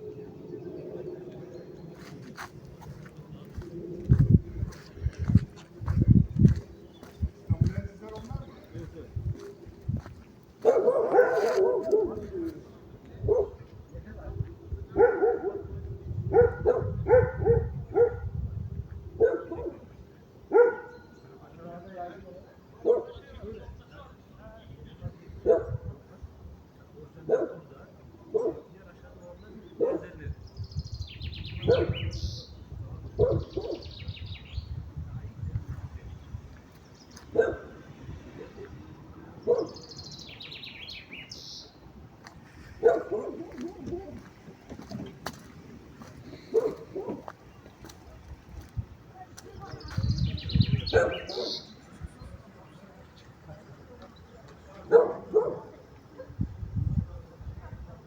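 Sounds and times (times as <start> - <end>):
songbird singing: 0.0 - 14.0, 28.5 - 57.3.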